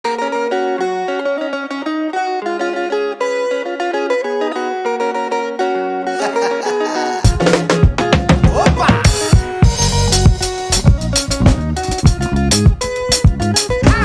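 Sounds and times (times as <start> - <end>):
plucked-string melody: 0.0 - 14.0.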